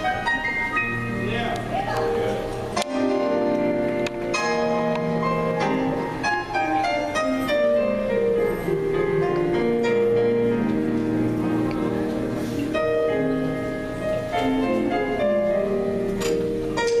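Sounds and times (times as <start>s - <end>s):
keyboard chords: 0.0s - 17.0s.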